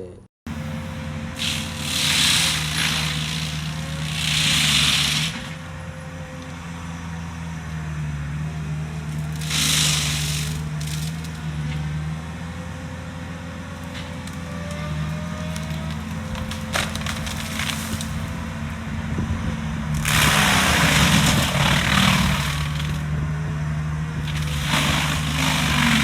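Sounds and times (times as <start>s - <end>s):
mulching drum shredding brush: 0.5s - 26.0s
skid steer engine running: 0.5s - 26.0s.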